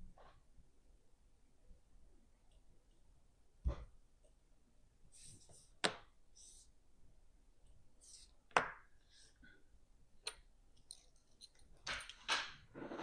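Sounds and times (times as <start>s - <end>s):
small metal tools clicking: 10.3s - 12.3s.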